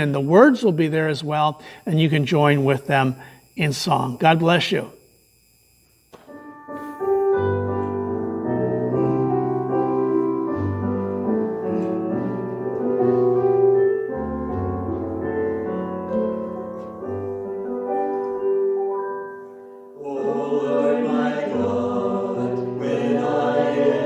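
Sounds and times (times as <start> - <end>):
piano playing held chords: 6.3 - 24.0.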